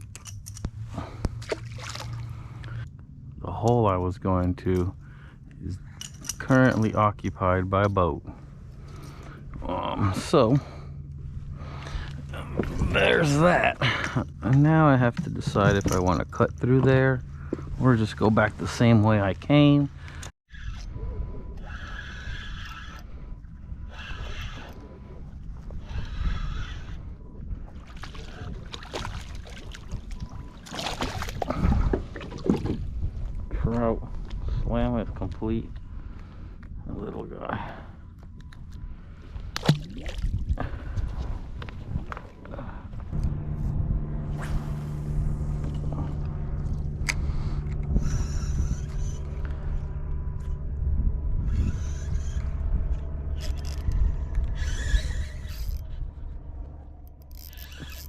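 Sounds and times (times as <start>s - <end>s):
wind rumble on microphone: 5.6s - 58.0s
electric motor humming: 43.1s - 56.0s.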